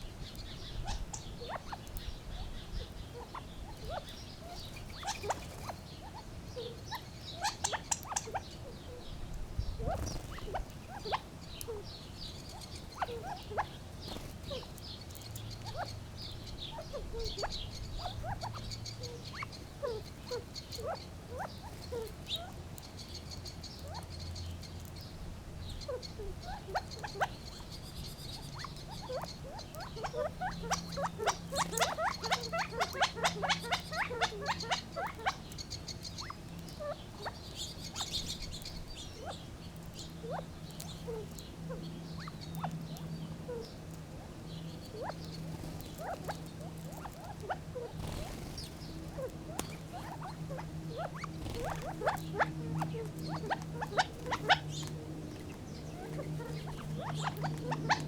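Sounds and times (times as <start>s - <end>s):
quail clucks and chips: 0.1s - 58.0s.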